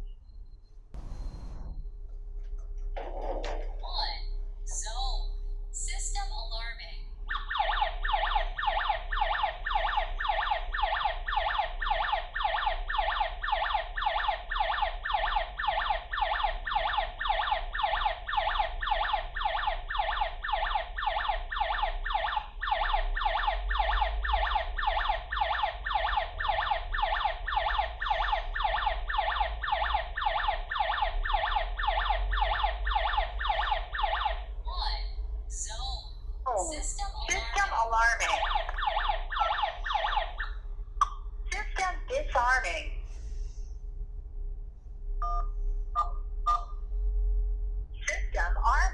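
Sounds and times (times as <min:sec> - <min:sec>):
electronic siren sweeping: 0:07.2 - 0:40.7.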